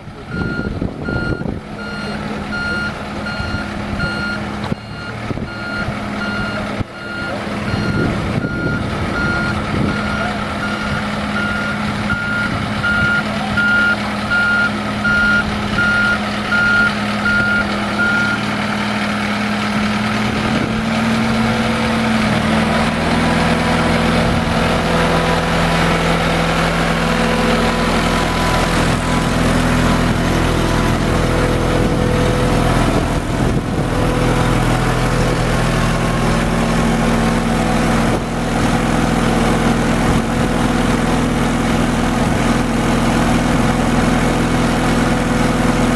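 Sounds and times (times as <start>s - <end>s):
engine running: 0.0s - 45.9s
warning beeper: 0.3s - 18.5s.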